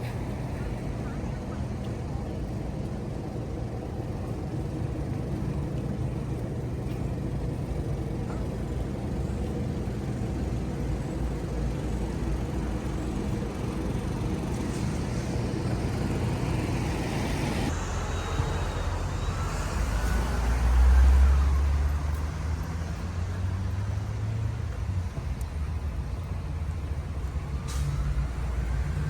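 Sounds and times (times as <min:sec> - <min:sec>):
rumble of passing vehicles: 0:00.0 - 0:29.0.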